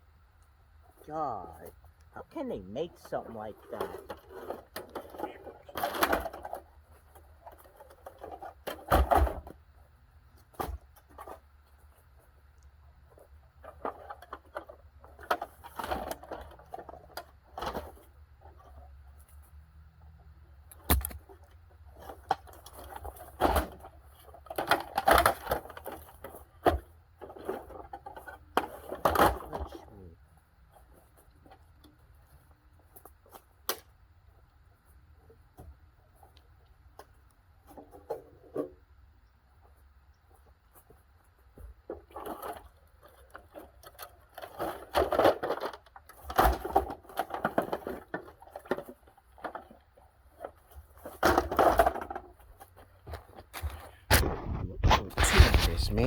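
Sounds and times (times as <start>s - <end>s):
steady low hum: 54.1s - 56.0s.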